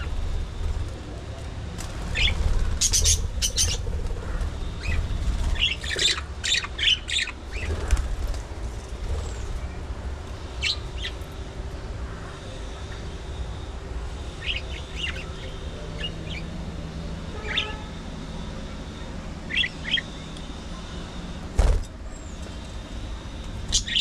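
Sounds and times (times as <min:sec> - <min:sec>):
steady low rumble: 0:00.0 - 0:12.3
budgerigars squawking and chirping: 0:02.1 - 0:07.9, 0:10.6 - 0:11.3, 0:14.4 - 0:16.5, 0:17.4 - 0:17.8, 0:19.5 - 0:20.2, 0:23.7 - 0:24.0.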